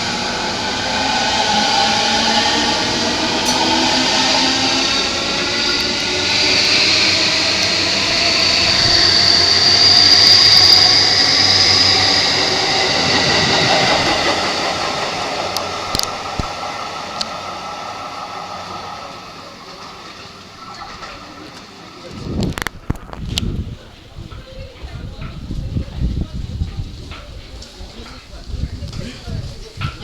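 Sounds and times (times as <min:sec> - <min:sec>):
electric train motor whine: 0:00.0 - 0:21.5.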